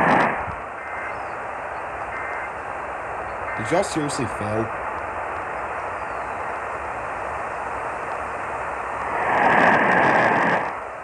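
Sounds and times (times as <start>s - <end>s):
radio static hiss: 0.0s - 11.0s
harsh noise burst with tone: 8.4s - 11.0s.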